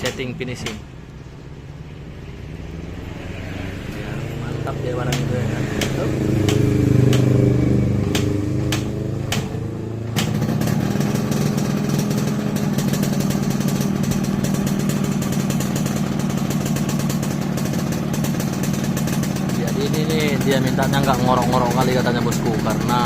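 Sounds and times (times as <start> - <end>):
motorcycle engine running: 2.4 - 23.0
sharp clicks: 5.1 - 7.4, 8.1 - 9.6.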